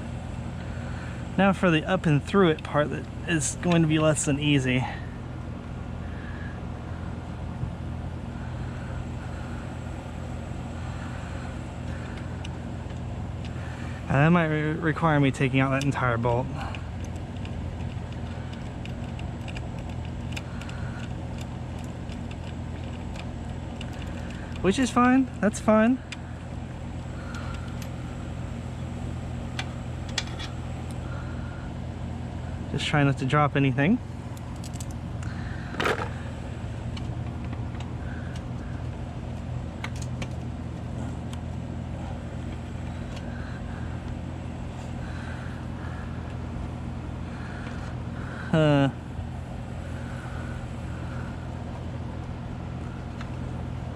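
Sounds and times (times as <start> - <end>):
steady low hum: 0.0 - 53.9
clicks and rattles of wire: 16.6 - 24.7, 34.3 - 38.4.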